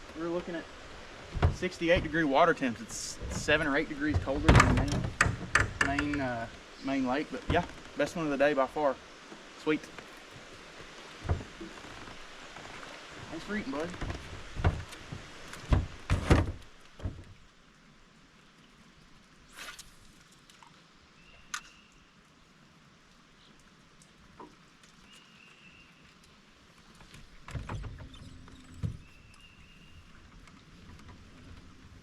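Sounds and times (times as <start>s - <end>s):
thumps on a boat: 1.3s - 2.4s, 3.0s - 6.3s, 7.4s - 8.0s, 11.2s - 12.2s, 13.6s - 17.4s, 27.1s - 29.2s.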